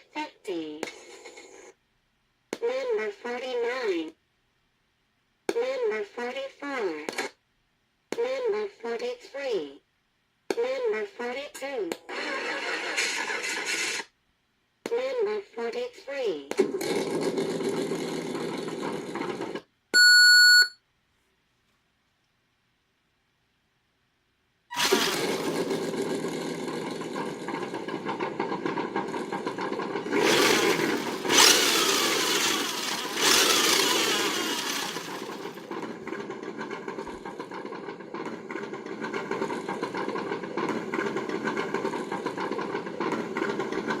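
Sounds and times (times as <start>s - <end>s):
simulated engine cranking and revving: 12.1s - 14.0s, 16.6s - 19.7s, 24.7s - 44.0s.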